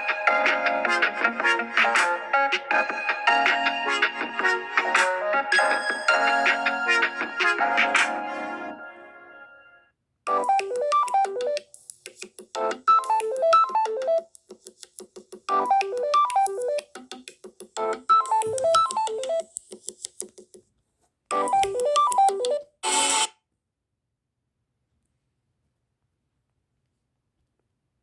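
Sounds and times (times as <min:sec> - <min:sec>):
phone ringtone: 0:02.8 - 0:09.7, 0:18.0 - 0:19.4, 0:21.4 - 0:23.3.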